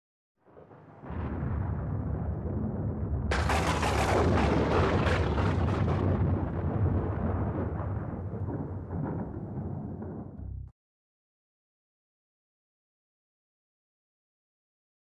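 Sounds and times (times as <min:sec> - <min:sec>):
thunder rumble and crack: 0:00.5 - 0:10.7.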